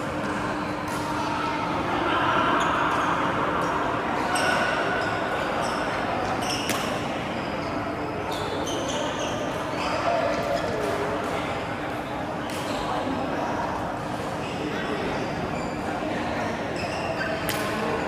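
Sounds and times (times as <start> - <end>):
shoe squeaks: 8.3 - 10.1.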